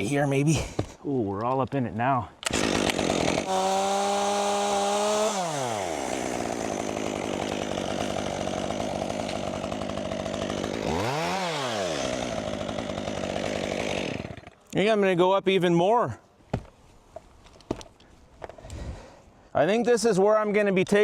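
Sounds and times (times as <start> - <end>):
chainsaw engine revving and idling: 2.5 - 14.6.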